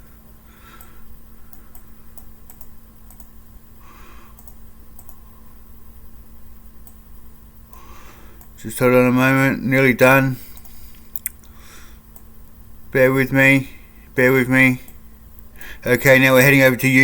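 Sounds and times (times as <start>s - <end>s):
faint steady hum: 0.0s - 17.0s
keyboard keys clicking: 1.5s - 3.3s, 4.4s - 5.2s.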